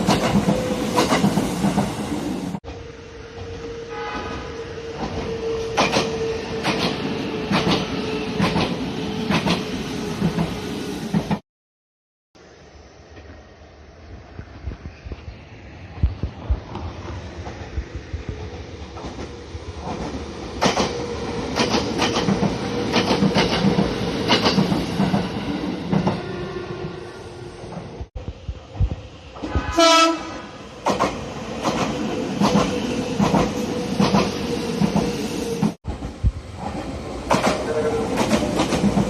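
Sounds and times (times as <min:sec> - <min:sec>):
train clacking over rail joints: 0:00.0 - 0:02.0, 0:04.9 - 0:10.5, 0:16.6 - 0:26.3, 0:30.8 - 0:39.0
train horn blast: 0:03.5 - 0:06.4, 0:29.5 - 0:30.6.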